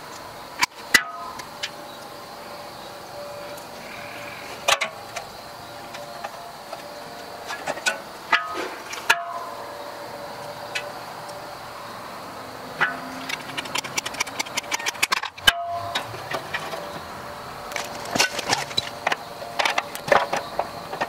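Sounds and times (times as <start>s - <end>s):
steady background hum: 0.0s - 21.0s
metal parts clanking: 12.8s - 17.0s, 17.7s - 21.0s.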